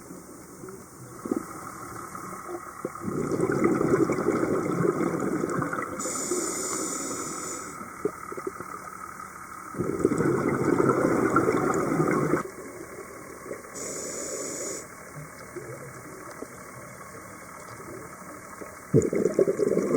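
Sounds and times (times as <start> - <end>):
exhaled bubbles underwater: 1.0 - 6.3, 7.8 - 9.0, 9.6 - 13.9, 15.0 - 19.9
regulator hissing inhale: 6.0 - 8.0, 13.8 - 14.9.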